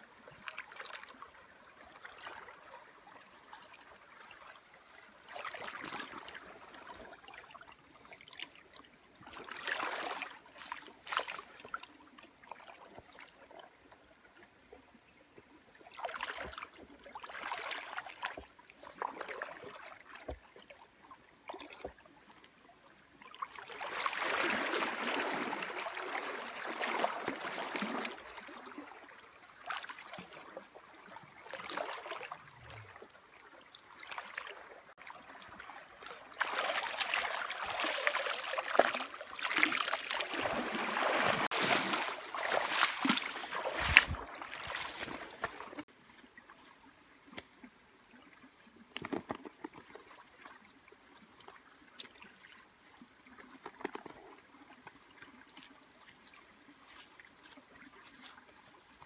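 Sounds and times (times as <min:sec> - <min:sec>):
stream water trickling: 0:00.0 - 0:59.0
water splashing and sloshing: 0:00.0 - 0:59.0.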